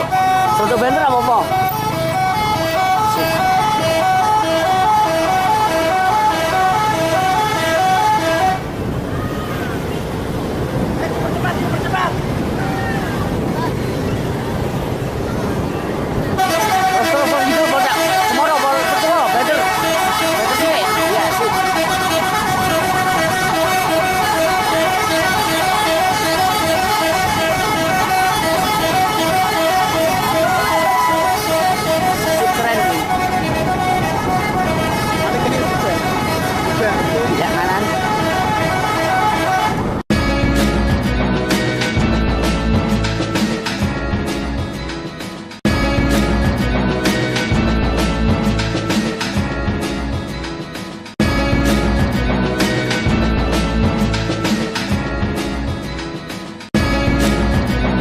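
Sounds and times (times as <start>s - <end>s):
bus musical horn tune: 0.0s - 8.9s, 16.3s - 42.0s, 45.6s - 48.4s, 51.2s - 53.9s, 56.7s - 58.0s.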